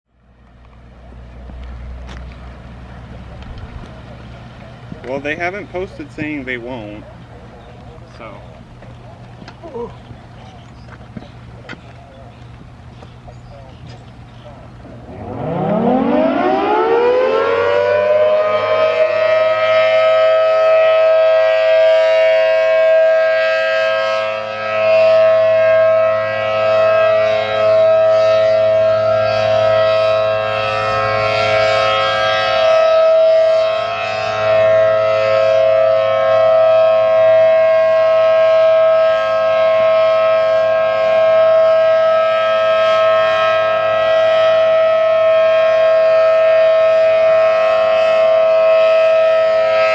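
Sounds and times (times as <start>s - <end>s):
warning siren: 13.5s - 49.9s.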